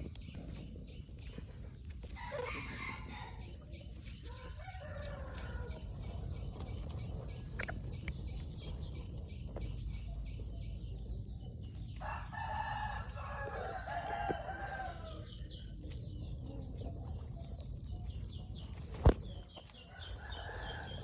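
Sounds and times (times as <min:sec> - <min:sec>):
low background rumble: 0:00.0 - 0:21.0
rooster crowing: 0:02.2 - 0:03.4, 0:04.4 - 0:05.8, 0:12.0 - 0:15.3, 0:19.9 - 0:21.0.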